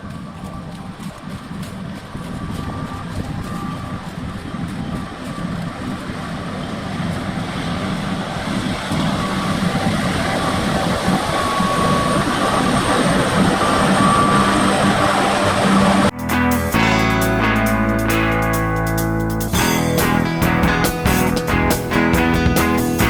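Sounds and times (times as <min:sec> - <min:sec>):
combine harvester humming and whining: 0:00.0 - 0:23.0
guitar music: 0:16.1 - 0:23.0.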